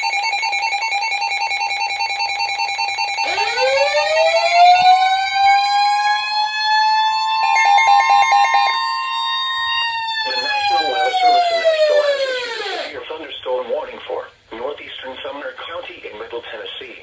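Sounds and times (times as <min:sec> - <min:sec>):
pulsing electronic two-tone alarm: 0:00.0 - 0:13.0
rising siren wail: 0:03.1 - 0:13.0.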